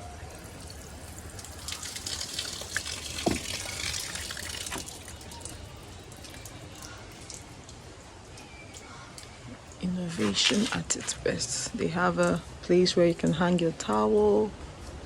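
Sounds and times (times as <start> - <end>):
shower water spraying: 1.0 - 5.1.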